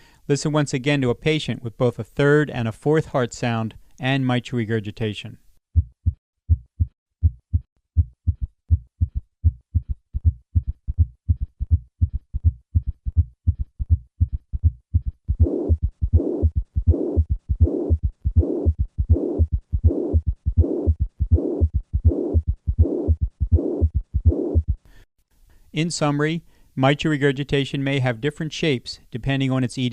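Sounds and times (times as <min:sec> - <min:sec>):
heartbeat thuds: 0:05.8 - 0:24.9
hiss-like heart murmur: 0:14.6 - 0:24.8.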